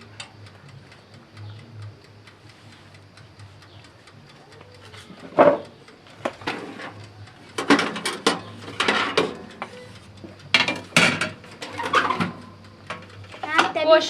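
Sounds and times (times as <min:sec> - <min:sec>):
kitchen metalware clattering: 0:05.2 - 0:05.6, 0:07.6 - 0:09.5, 0:10.6 - 0:13.8.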